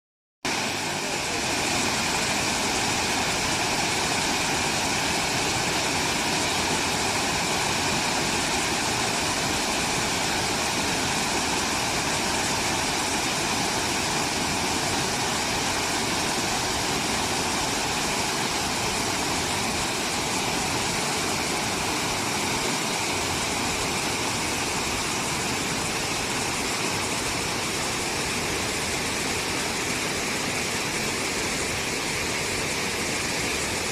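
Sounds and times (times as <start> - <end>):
waterfall roaring: 0.5 - 33.9.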